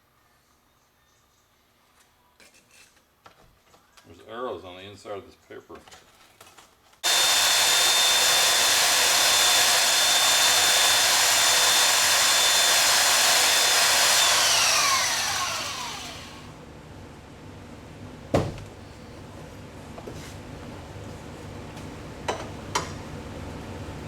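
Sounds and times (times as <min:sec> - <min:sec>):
belt sander whining: 0:07.0 - 0:16.6.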